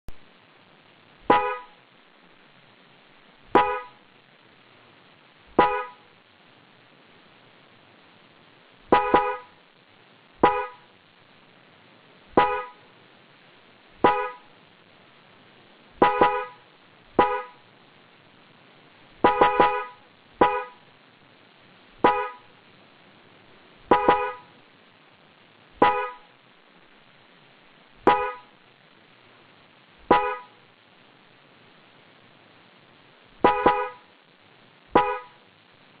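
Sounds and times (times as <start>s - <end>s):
car horn honking: 1.3s - 1.8s, 3.6s - 4.0s, 5.6s - 6.0s, 8.9s - 9.6s, 10.4s - 10.9s, 12.4s - 12.9s, 14.0s - 14.5s, 16.0s - 17.6s, 19.2s - 20.8s, 22.0s - 22.5s, 23.9s - 24.6s, 25.8s - 26.3s, 28.1s - 28.5s, 30.1s - 30.6s, 33.4s - 34.1s, 34.9s - 35.4s.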